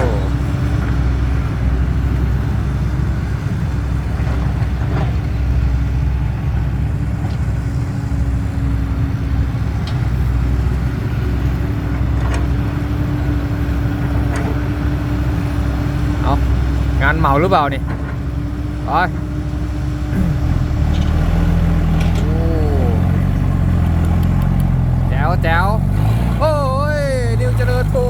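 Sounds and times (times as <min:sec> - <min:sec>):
vehicle engine running: 0:16.2 - 0:28.0.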